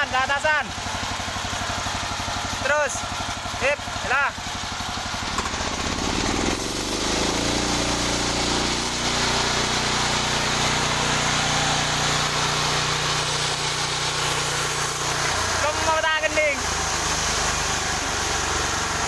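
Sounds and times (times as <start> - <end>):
sawmill engine running: 0.0 - 19.0
saw blade rasping through log: 5.0 - 19.0.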